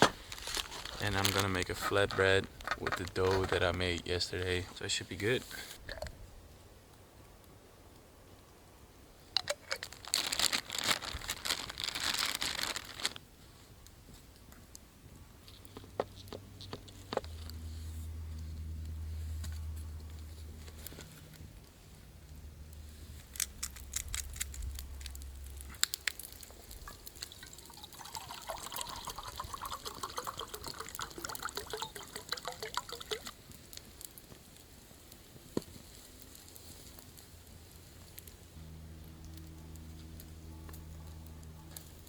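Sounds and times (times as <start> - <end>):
liquid gurgling into container: 26.9 - 33.3.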